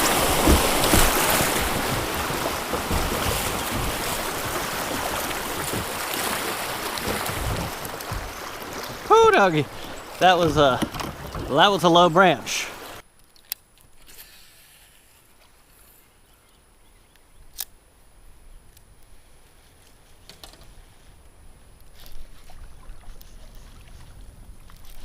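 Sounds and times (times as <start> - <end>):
knocks against kayak hull: 0.0 - 11.6
flowing river water: 0.0 - 13.0, 20.7 - 25.0.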